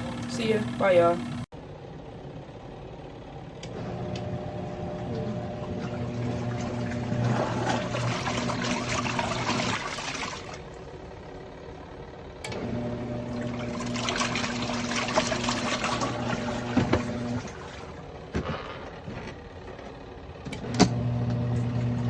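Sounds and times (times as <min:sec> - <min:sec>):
washing machine motor running: 0:00.0 - 0:22.0
water sloshing in tub: 0:04.9 - 0:10.9, 0:13.2 - 0:18.2.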